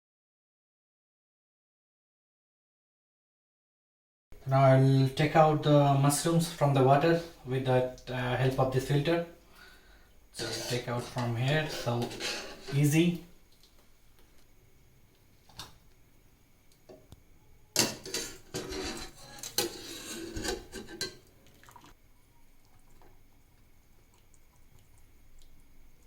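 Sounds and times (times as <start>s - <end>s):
metal utensils clattering against pot: 17.8s - 21.3s.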